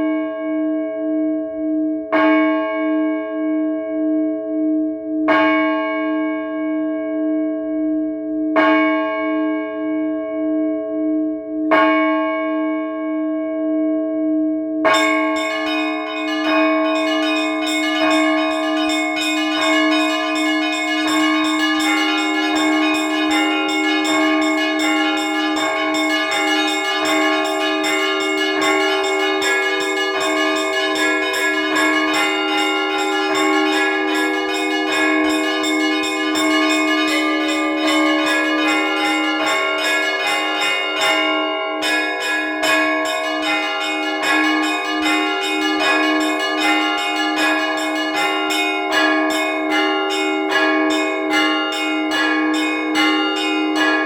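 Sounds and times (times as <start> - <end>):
peal of many bells: 0.0 - 54.0
large bell strokes: 15.0 - 54.0.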